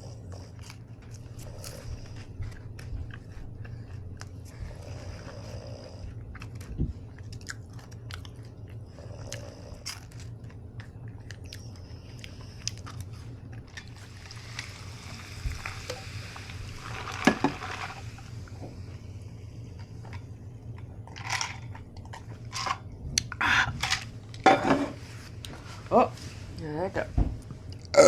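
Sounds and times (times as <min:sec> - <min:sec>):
person chewing crunchy food: 0:00.0 - 0:19.0.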